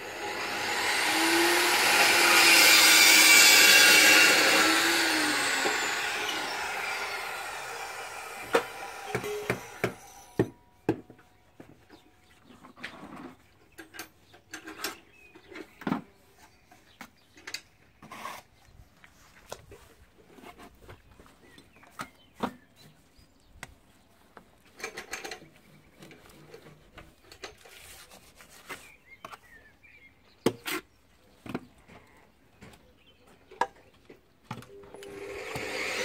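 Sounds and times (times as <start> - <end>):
scraping and rubbing: 0.2 - 7.5, 27.6 - 29.0
hand tools knocking: 8.4 - 11.0.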